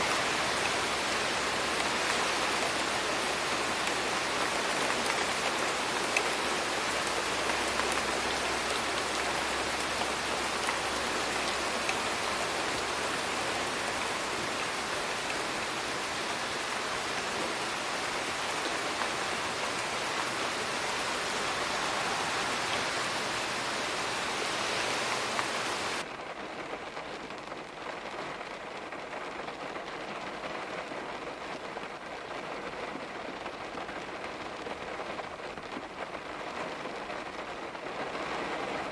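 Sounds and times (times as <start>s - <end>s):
heavy rain falling: 0.0s - 38.9s.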